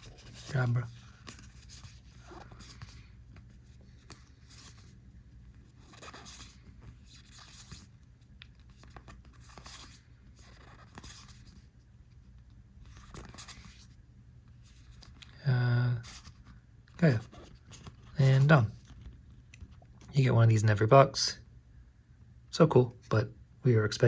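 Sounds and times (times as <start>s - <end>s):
cards and wrappers rustling: 0.0s - 12.3s, 12.9s - 13.9s, 16.0s - 20.1s.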